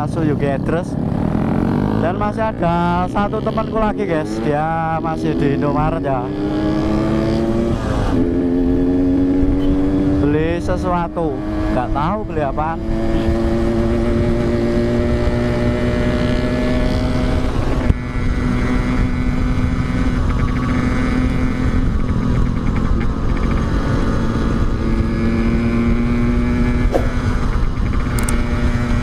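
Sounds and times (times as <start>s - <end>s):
other motorcycle engines running: 0.0s - 29.0s
two-stroke motorcycle engine running: 12.9s - 29.0s
sharp knock: 26.9s - 27.4s.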